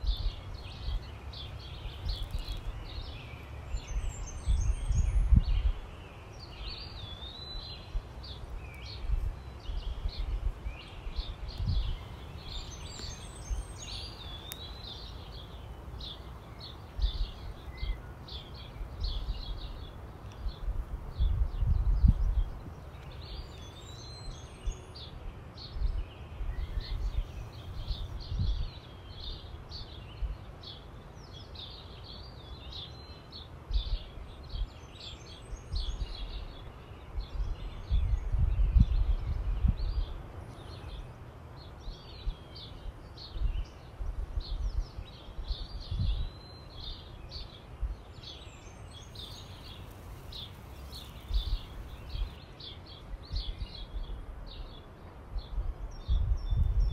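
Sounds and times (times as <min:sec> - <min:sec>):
small songbirds chirping: 0:00.0 - 0:56.9
low rumbles on the microphone: 0:09.0 - 0:15.4, 0:16.9 - 0:23.6, 0:25.8 - 0:28.8, 0:43.2 - 0:46.3, 0:49.2 - 0:52.4, 0:55.4 - 0:56.9.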